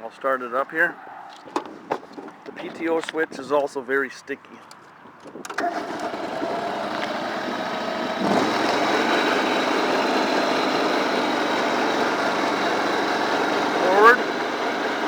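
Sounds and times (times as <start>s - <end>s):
lawn tractor engine running: 5.4s - 15.0s.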